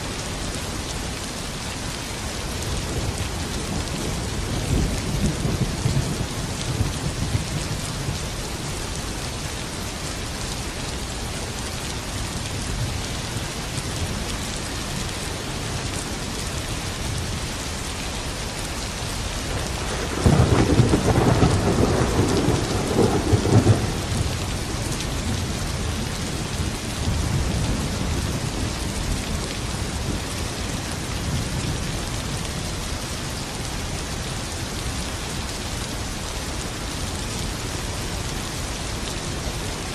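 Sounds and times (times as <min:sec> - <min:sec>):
steady rain: 0:00.0 - 0:39.9
rolling thunder: 0:19.5 - 0:25.4.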